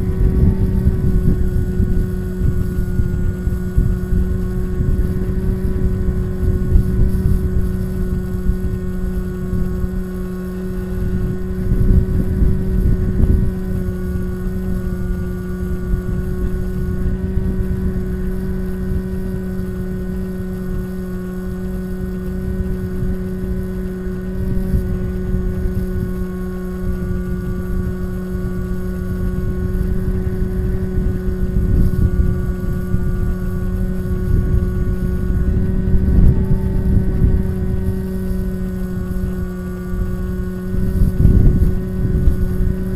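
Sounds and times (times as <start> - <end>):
electric motor and propeller running: 0.0 - 42.9
wind buffeting microphone: 0.0 - 42.9.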